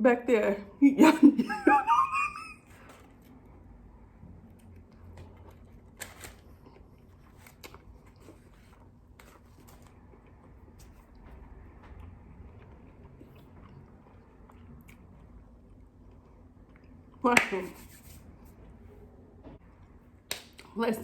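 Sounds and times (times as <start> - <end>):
chewing crispy food: 2.8 - 17.2.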